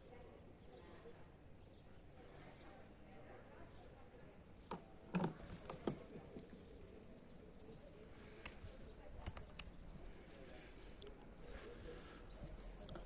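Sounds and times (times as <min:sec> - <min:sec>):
light sharp taps and clicks: 0:08.4 - 0:08.6.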